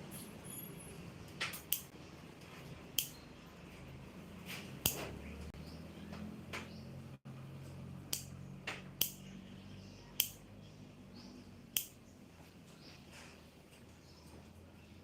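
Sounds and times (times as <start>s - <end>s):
nail clippers clicking: 11.8s - 12.0s.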